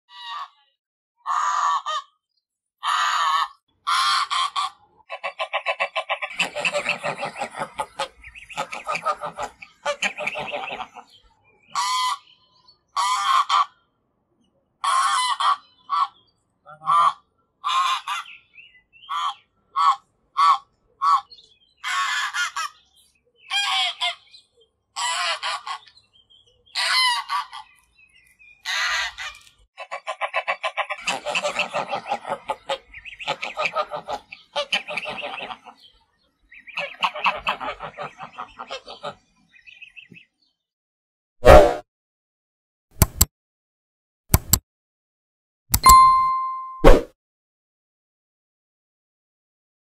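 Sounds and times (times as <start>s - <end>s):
goose honking: 1.3s - 2.1s, 2.8s - 11.1s, 11.8s - 12.3s, 13.0s - 13.8s, 14.8s - 18.3s, 29.8s - 35.7s, 36.8s - 39.2s.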